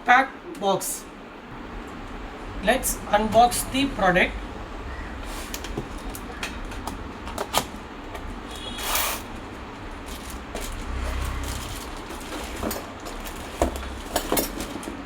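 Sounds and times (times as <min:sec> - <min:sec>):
cardboard packaging clicks and knocks: 0:12.0 - 0:15.0.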